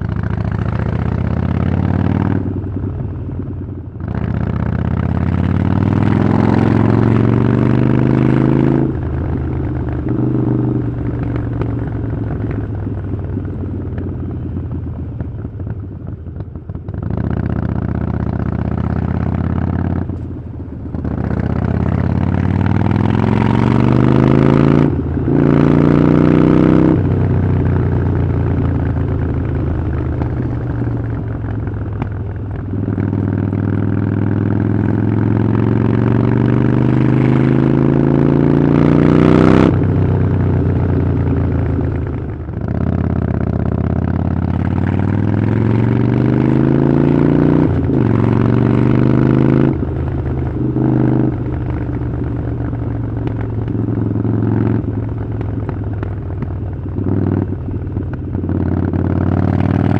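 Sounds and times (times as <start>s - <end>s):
motorcycle engine accelerating: 0.0s - 59.9s.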